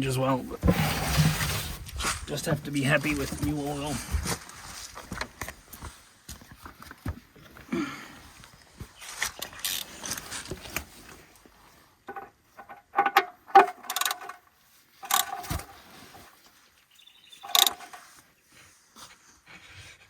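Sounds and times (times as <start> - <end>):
metal objects clanking: 17.5 - 18.1.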